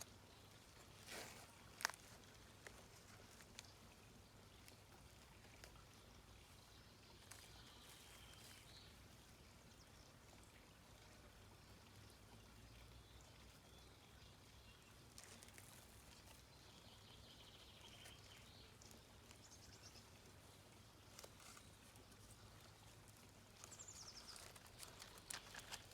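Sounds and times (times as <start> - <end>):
brief rustle: 23.6 - 25.9.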